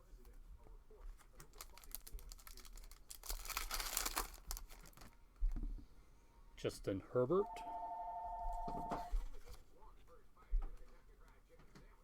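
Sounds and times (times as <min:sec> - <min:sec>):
foil wrapper crinkling: 0:01.2 - 0:05.2.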